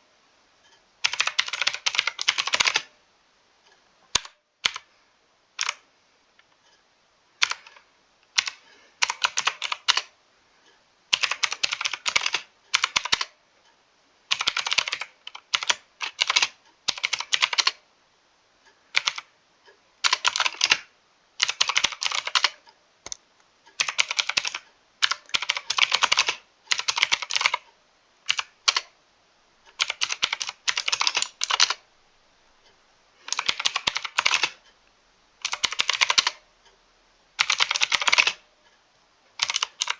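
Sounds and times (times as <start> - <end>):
mechanical keyboard typing: 1.0 - 2.9, 4.1 - 4.9, 5.6 - 5.8, 7.4 - 10.1, 11.1 - 13.4, 14.3 - 17.8, 18.9 - 19.3, 20.0 - 23.2, 23.8 - 27.7, 28.3 - 28.9, 29.7 - 31.8, 33.2 - 34.6, 35.4 - 36.4, 37.4 - 38.4, 39.4 - 39.9.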